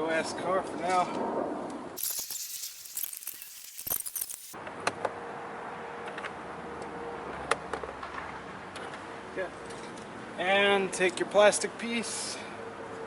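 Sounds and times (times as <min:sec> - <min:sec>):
small metal pieces jingling: 0:02.0 - 0:04.6.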